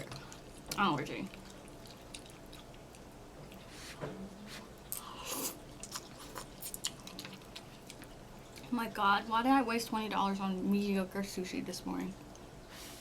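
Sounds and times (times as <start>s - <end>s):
person chewing food: 0.0s - 4.0s, 4.6s - 8.7s.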